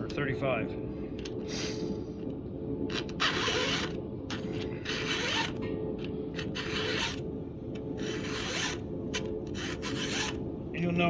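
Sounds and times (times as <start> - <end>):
file rasping on chainsaw chain: 8.0 - 8.8, 9.6 - 10.4.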